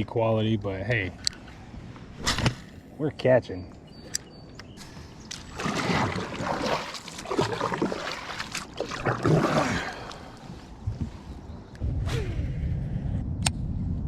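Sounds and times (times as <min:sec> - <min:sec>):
water splashing around a kayak: 0:05.3 - 0:11.2.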